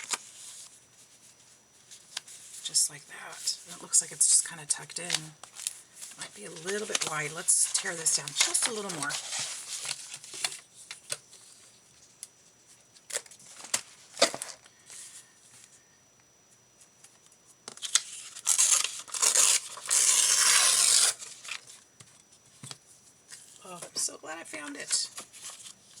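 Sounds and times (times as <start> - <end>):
paper tearing by hand: 18.5 - 21.3.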